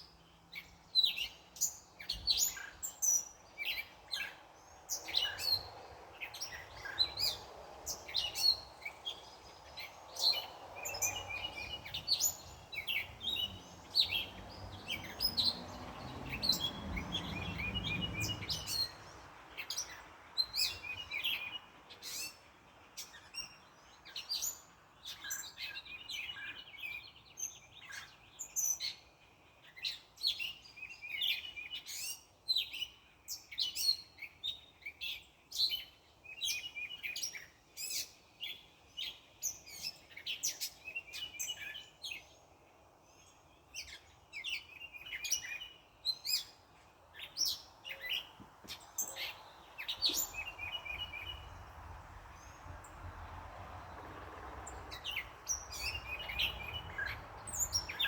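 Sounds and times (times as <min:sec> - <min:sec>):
birds chirping and trilling: 0:00.0 - 0:58.0
passing car rumble: 0:05.0 - 0:21.2, 0:49.3 - 0:58.0.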